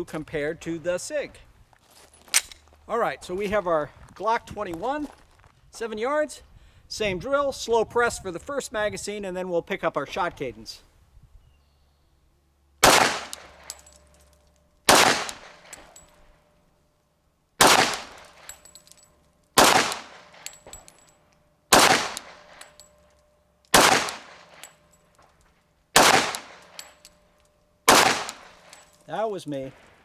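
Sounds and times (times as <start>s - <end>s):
loud pistol shots: 12.8s - 13.8s, 14.9s - 15.9s, 17.6s - 18.6s, 19.6s - 20.5s, 21.7s - 22.8s, 23.7s - 24.7s, 26.0s - 27.0s, 27.9s - 28.8s.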